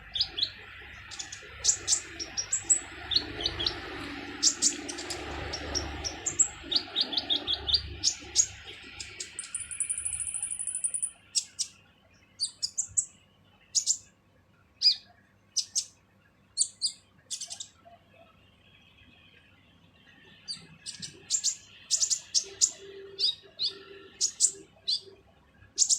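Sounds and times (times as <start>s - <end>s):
bird high trill: 0.0s - 11.7s, 20.5s - 25.2s
bird harsh high chirps: 0.0s - 11.8s, 12.4s - 14.1s, 14.8s - 16.0s, 16.6s - 17.8s, 20.4s - 25.9s.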